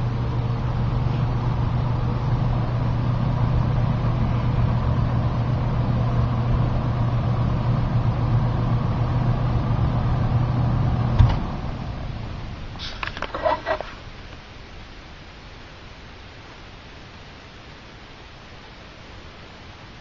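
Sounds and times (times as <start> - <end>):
rushing air from fan: 0.0 - 14.2
electric fan motor hum: 0.0 - 14.9
fan switch click: 11.2 - 11.6.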